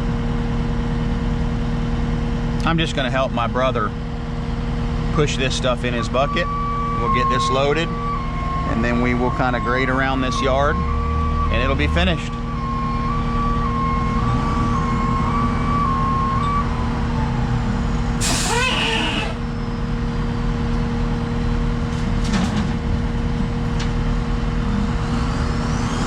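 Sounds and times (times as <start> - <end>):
skid steer engine running: 12.4 - 26.0
sharp hiss with a squeal: 18.2 - 19.5
faint rising whine: 24.7 - 26.0.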